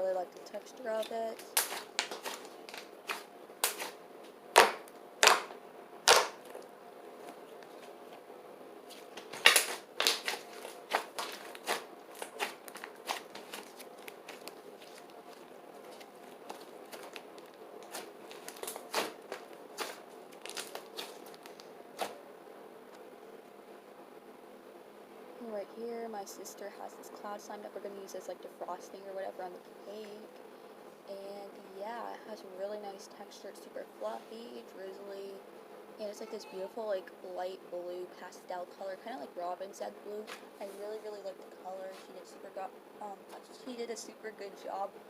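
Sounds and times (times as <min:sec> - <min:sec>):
clay slime clicking and popping: 0:04.6 - 0:05.5, 0:06.1 - 0:06.4.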